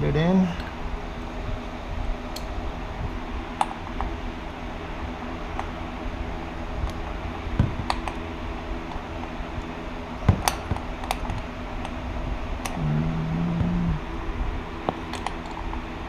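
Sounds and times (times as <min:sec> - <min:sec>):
steady low hum: 0:00.0 - 0:16.0
short low tone: 0:12.8 - 0:14.1.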